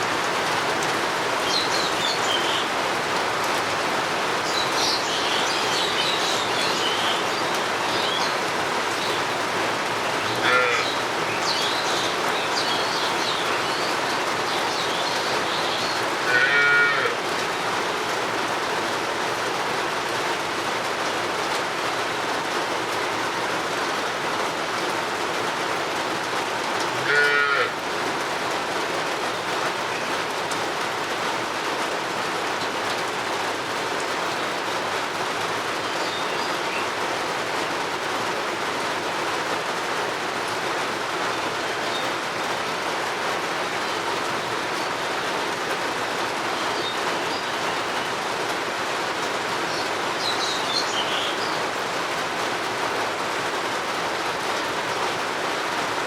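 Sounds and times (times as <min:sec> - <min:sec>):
steady rain falling: 0:00.0 - 0:56.0
cow mooing: 0:10.4 - 0:10.9, 0:16.3 - 0:17.2, 0:27.0 - 0:27.7.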